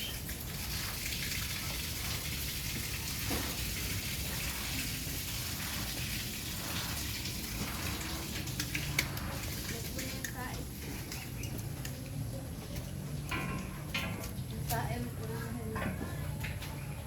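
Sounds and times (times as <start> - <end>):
hiss of running water: 0.0 - 10.5.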